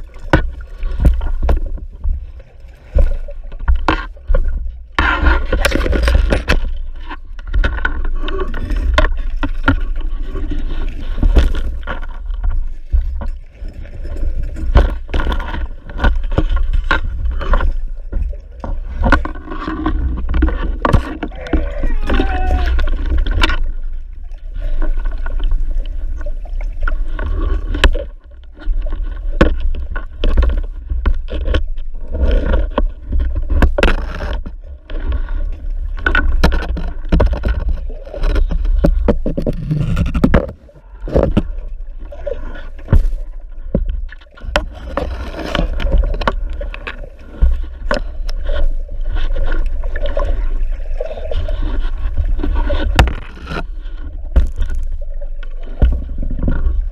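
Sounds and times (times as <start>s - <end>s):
underwater rumble of moving water: 0.0s - 56.9s
sharp clicks and knocks: 36.0s - 41.6s.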